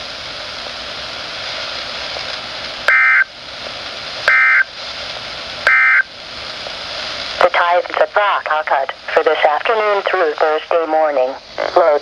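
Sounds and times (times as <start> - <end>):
radio static: 2.9 - 3.3, 4.3 - 4.7, 5.6 - 6.1, 7.4 - 12.0.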